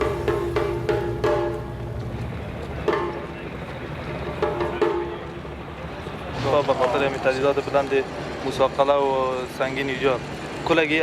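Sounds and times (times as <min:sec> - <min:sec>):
pulsing struck pitched notes: 0:00.0 - 0:02.2
low steady music bed: 0:00.0 - 0:06.0.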